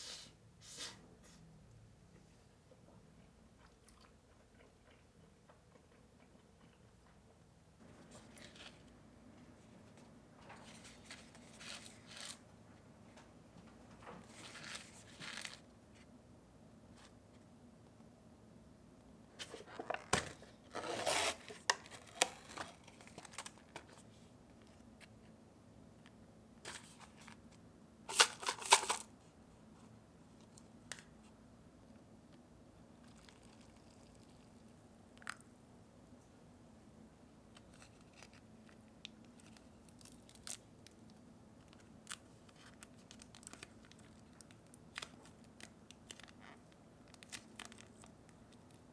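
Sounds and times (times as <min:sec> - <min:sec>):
rustling and scraping handling: 0:07.8 - 0:12.4, 0:13.6 - 0:16.1, 0:19.4 - 0:25.3, 0:26.6 - 0:30.6.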